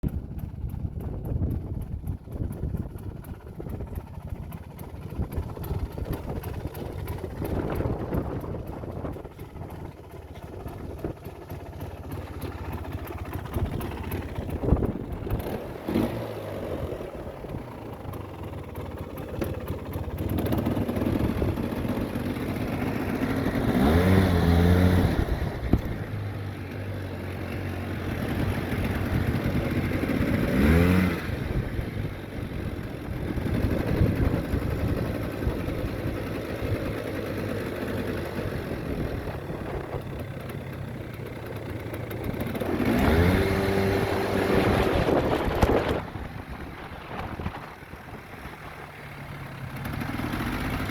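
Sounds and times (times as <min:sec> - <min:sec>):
atv engine revving: 0:02.1 - 0:50.9.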